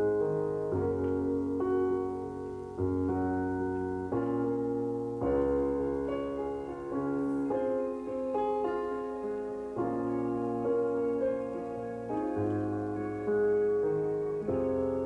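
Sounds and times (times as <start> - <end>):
piano chords: 0.0 - 15.0.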